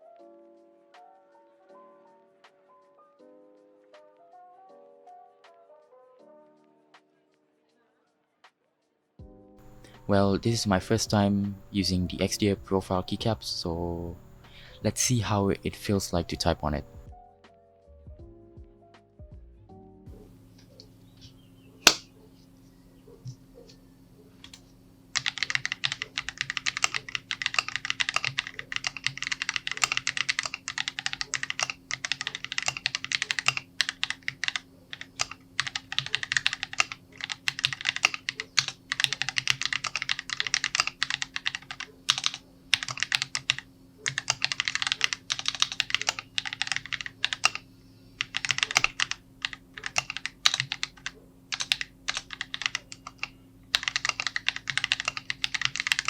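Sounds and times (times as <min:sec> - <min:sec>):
mechanical keyboard typing: 0:09.6 - 0:17.1, 0:21.8 - 0:22.1, 0:24.4 - 0:56.0
sharp click: 0:21.8 - 0:22.1.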